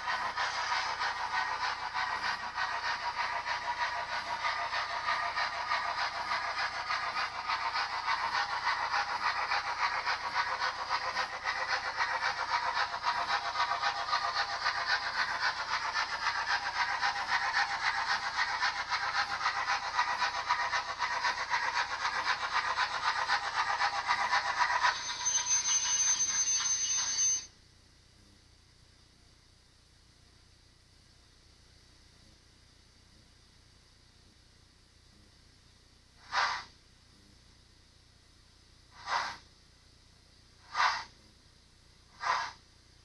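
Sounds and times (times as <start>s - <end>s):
model steam locomotive chuffs: 0.0s - 27.5s, 36.2s - 36.8s, 38.9s - 39.5s, 40.5s - 41.2s, 42.0s - 42.7s
model wheels and motor whirr: 0.0s - 27.5s, 36.3s - 36.7s, 39.0s - 39.4s, 40.7s - 41.2s, 42.2s - 42.6s
thin high steady tone: 24.8s - 27.5s.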